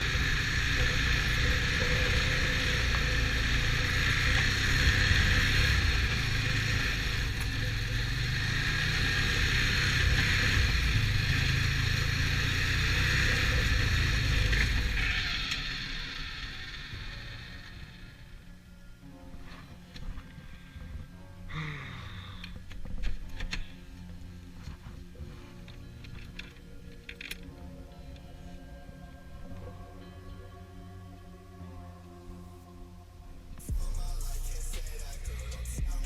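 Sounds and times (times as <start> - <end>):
snowmobile engine running: 0.0 - 18.4.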